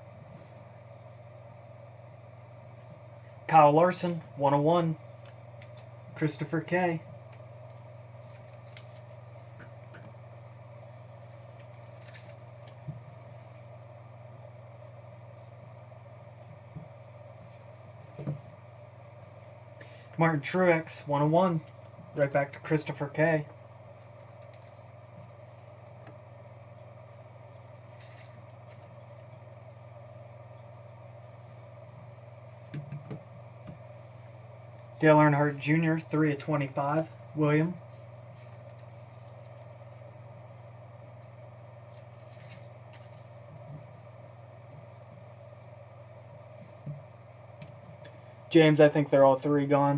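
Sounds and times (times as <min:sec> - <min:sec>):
low room hum: 0:00.0 - 0:49.9
trading cards clicking and rustling: 0:08.2 - 0:09.2, 0:11.4 - 0:12.9.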